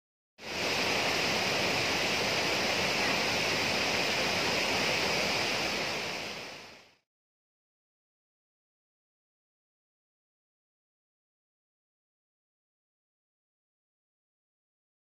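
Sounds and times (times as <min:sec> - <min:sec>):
waterfall roaring: 0:00.4 - 0:07.0.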